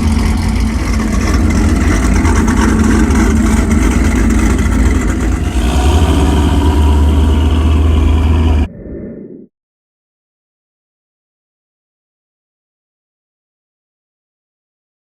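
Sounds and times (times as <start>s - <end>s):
loud car engine rumble: 0.0s - 8.7s.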